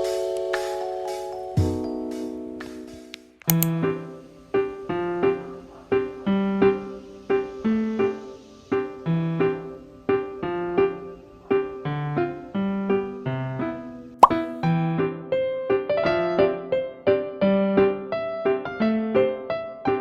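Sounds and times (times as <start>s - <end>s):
gentle piano music: 0.0s - 20.0s
sharp click: 3.4s - 3.7s.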